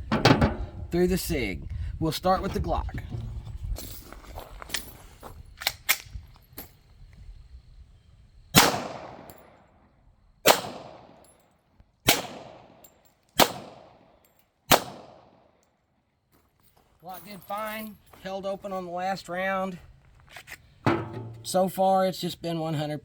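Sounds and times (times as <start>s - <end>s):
gun handling clicks: 5.6s - 6.2s
pistol shots echoing: 8.6s - 9.6s, 10.4s - 11.2s, 12.1s - 12.8s, 13.4s - 14.0s, 14.7s - 15.4s.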